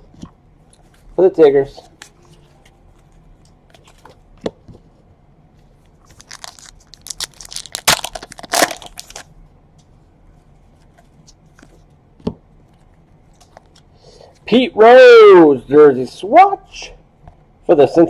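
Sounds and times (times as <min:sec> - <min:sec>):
card wrapper tearing and crinkling: 0:06.0 - 0:09.3.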